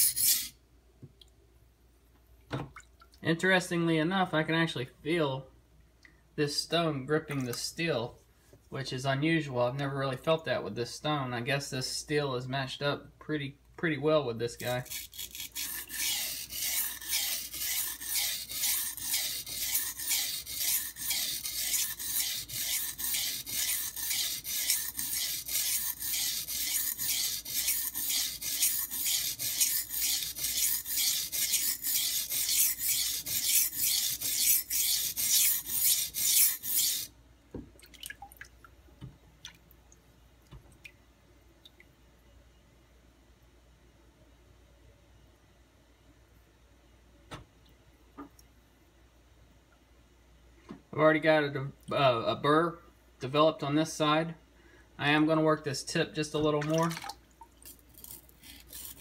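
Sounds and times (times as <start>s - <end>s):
knife sharpening on whetstone: 0.0s - 0.6s, 14.7s - 37.1s, 58.4s - 59.0s.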